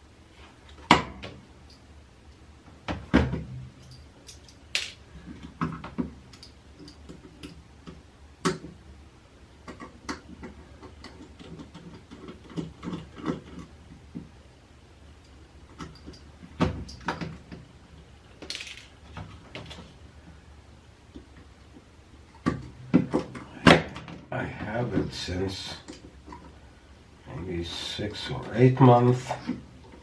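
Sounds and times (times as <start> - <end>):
small parts clicking and knocking: 3.7 - 8.8, 9.6 - 14.3, 15.2 - 20.0.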